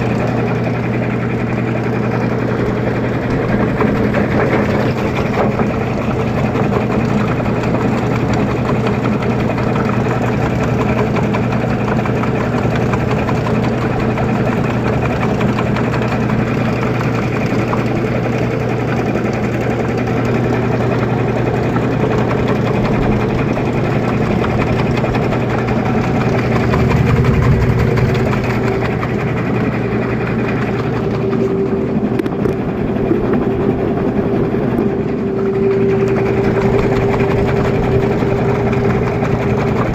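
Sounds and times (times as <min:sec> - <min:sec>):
washing machine spinning: 0:00.0 - 0:39.9
high whining tone: 0:25.5 - 0:32.6.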